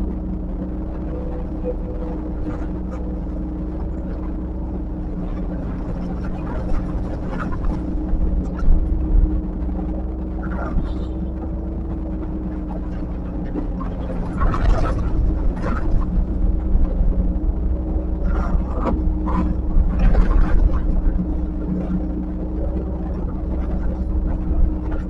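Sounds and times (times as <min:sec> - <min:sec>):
diesel engine of heavy machinery: 0:00.0 - 0:25.0.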